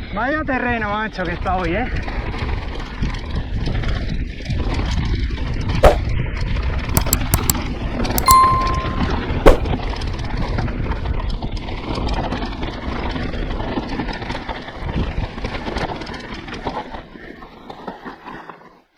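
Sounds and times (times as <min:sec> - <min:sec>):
sharp knock: 0:06.9 - 0:07.5, 0:08.2 - 0:09.6.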